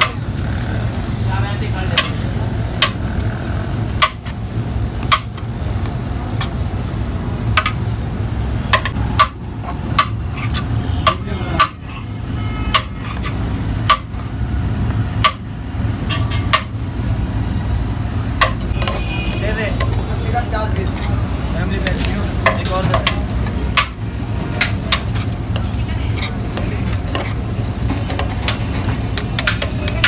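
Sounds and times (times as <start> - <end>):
metal utensils clanking on a pot: 1.6 - 3.2, 8.7 - 14.2, 16.0 - 16.8, 18.4 - 21.1, 21.7 - 30.0.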